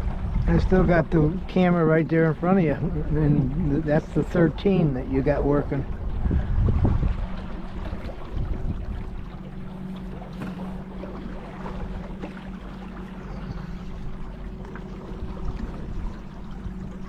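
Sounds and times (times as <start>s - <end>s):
wind noise: 0.0s - 1.2s, 5.2s - 9.3s
boat motor humming: 0.0s - 17.0s
water noise: 0.0s - 17.0s.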